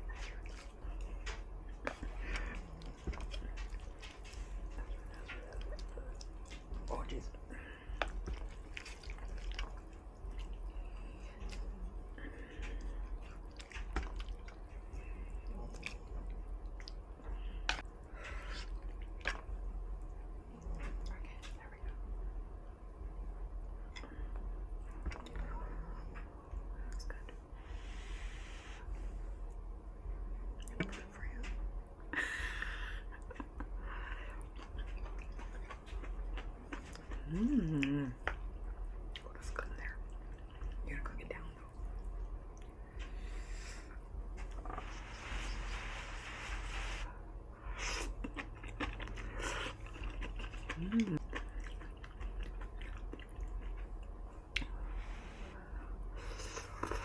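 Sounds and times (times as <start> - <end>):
wet chewing and lip smacks: 0.0 - 7.2, 7.9 - 18.0, 34.3 - 43.4, 44.3 - 44.8, 47.8 - 54.8
steady low hum: 0.0 - 57.0
person humming mm: 37.2 - 38.2, 50.7 - 51.2
mouth clicks and smacks chewing: 47.8 - 54.8.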